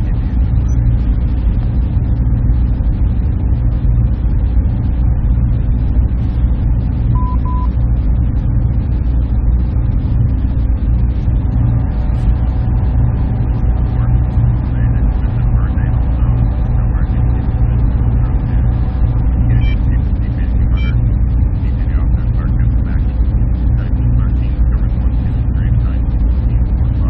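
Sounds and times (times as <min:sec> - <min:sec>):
server room machines droning: 0:00.0 - 0:27.0
short beeps: 0:07.1 - 0:07.7.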